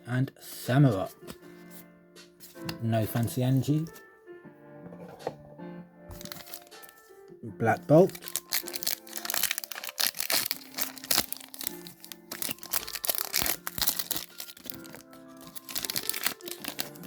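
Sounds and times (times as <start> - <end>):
background music: 0.0 - 17.0
foil wrapper crinkling and tearing: 6.1 - 7.0, 8.0 - 17.0.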